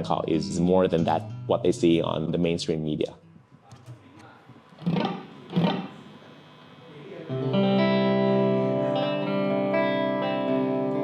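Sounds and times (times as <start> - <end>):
electric guitar with effects: 0.2 - 1.8, 4.7 - 11.0.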